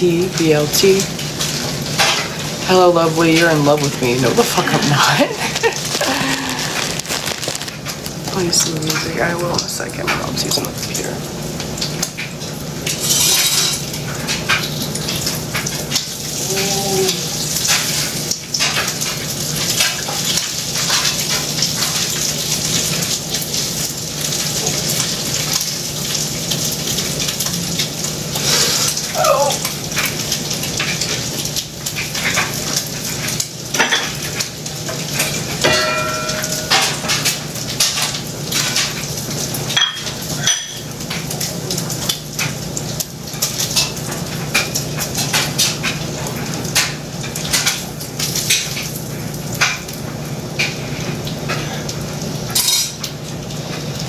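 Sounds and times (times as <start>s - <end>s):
food sizzling in a frying pan: 0.0s - 54.0s
utensils clinking against pan: 12.9s - 14.6s, 35.2s - 38.2s, 39.8s - 40.9s, 52.5s - 53.1s.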